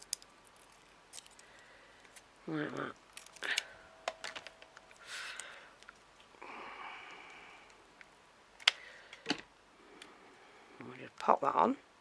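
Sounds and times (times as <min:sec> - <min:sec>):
soft breath: 0:04.9 - 0:07.9.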